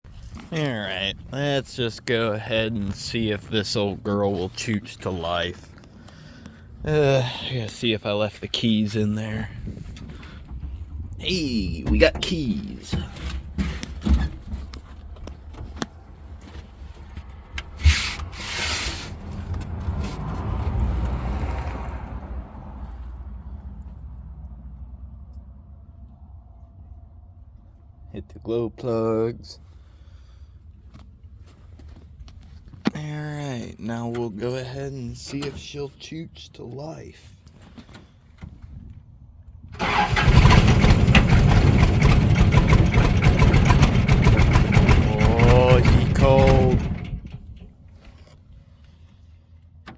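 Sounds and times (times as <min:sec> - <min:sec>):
steady low rumble: 0:00.1 - 0:13.6
rubbing or scraping: 0:17.7 - 0:20.6
diesel engine knocking: 0:39.8 - 0:47.6
diesel engine starter cranking: 0:39.8 - 0:48.0.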